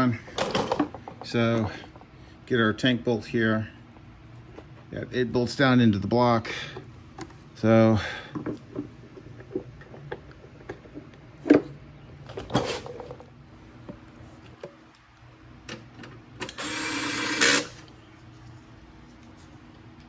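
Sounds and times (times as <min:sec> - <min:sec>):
small power tool running: 0:16.5 - 0:17.8.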